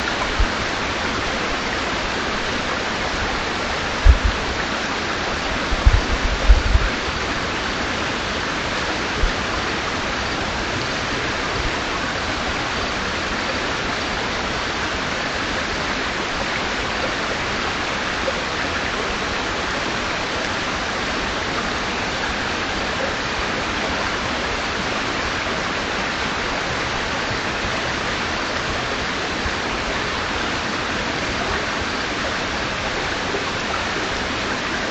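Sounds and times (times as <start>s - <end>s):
river water rushing: 0.0s - 34.9s
low thumps: 3.2s - 4.6s, 5.6s - 7.2s.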